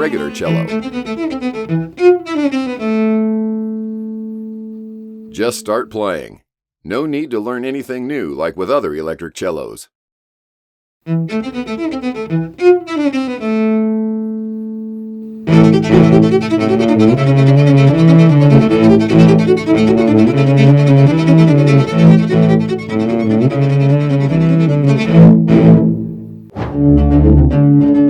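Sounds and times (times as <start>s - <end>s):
electric cello playing: 0.0s - 4.9s, 11.1s - 28.0s.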